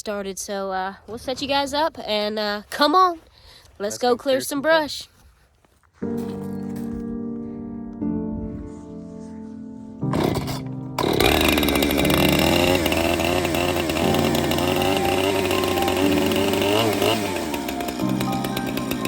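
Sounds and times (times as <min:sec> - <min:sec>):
chainsaw running and revving: 0:10.1 - 0:19.0.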